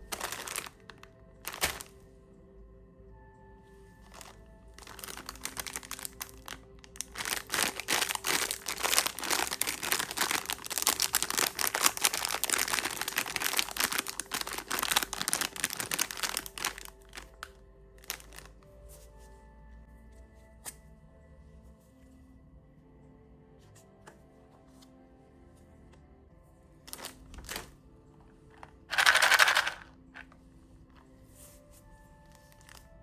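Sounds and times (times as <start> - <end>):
plastic wrapper crinkling: 0.0 - 1.9, 4.1 - 18.5, 26.9 - 27.8, 28.9 - 29.8.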